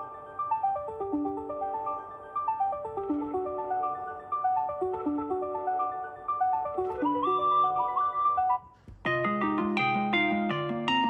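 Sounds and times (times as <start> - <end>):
phone ringtone marimba melody: 0.0 - 8.6.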